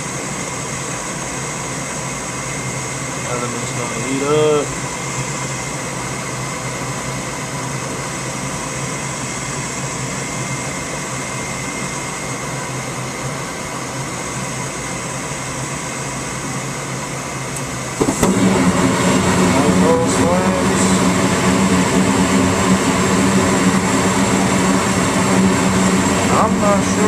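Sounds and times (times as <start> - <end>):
furnace motor whining: 17.5 - 27.0
gas burners igniting: 17.5 - 27.0.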